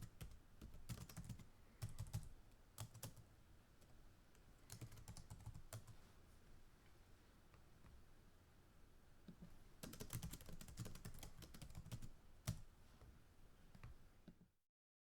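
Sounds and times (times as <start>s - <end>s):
fast typing on keyboard: 0.0s - 3.2s, 4.7s - 6.0s, 9.8s - 12.6s.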